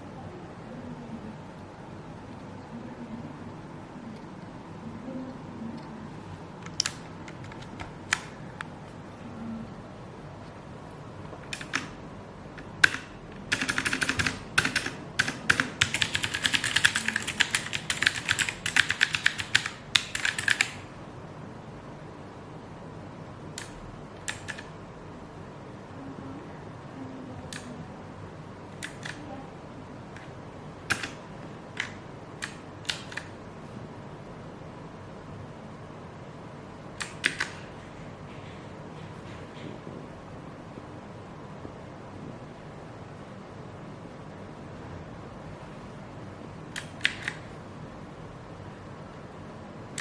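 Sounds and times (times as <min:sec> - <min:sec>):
mechanical keyboard keys clicking: 0:06.6 - 0:08.3, 0:11.5 - 0:12.0, 0:12.6 - 0:20.8, 0:23.6 - 0:24.7, 0:28.8 - 0:29.2, 0:30.9 - 0:31.2, 0:31.8 - 0:33.4, 0:37.0 - 0:37.6, 0:46.7 - 0:47.5.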